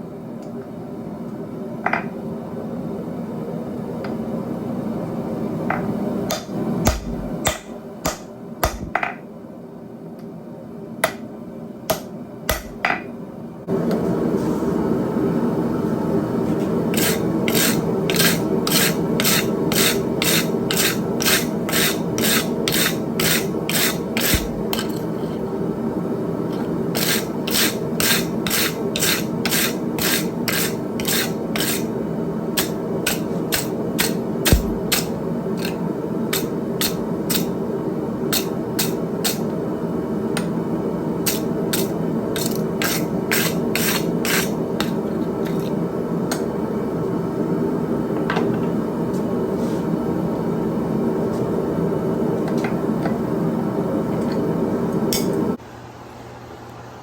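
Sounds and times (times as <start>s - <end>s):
steady hum: 0.0s - 9.5s, 10.2s - 56.5s
hand file rasping on steel: 16.9s - 24.5s.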